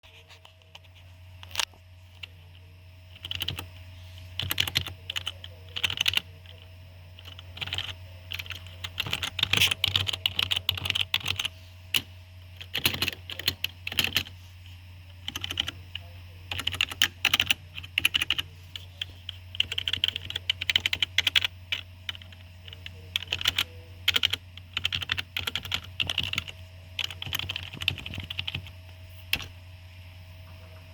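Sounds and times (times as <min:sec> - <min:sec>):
keyboard typing: 0:03.1 - 0:03.7, 0:04.4 - 0:06.6, 0:07.2 - 0:14.3, 0:15.2 - 0:28.7, 0:29.3 - 0:29.5.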